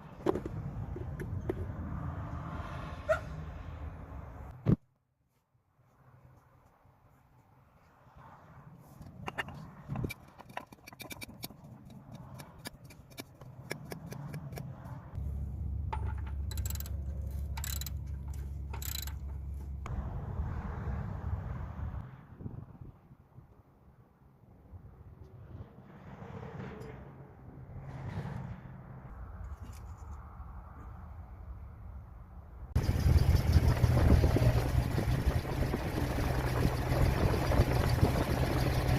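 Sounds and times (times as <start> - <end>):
metallic clicks of hand tools: 9.3 - 14.8, 15.9 - 19.7
car engine idling: 32.8 - 38.9
steady low rumble: 32.8 - 38.9.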